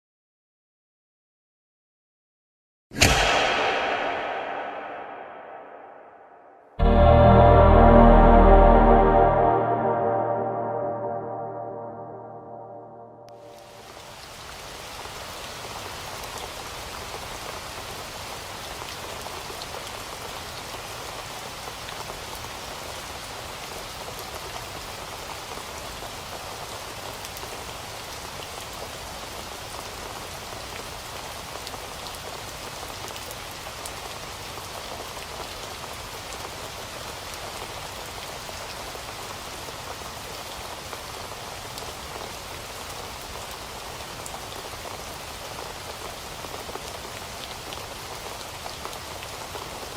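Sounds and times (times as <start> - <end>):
steady rain falling: 13.5 - 49.9.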